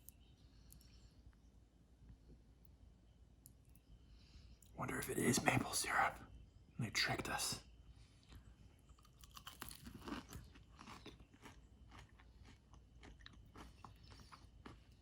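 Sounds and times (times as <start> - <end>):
person chewing chicken wing: 8.2 - 15.0.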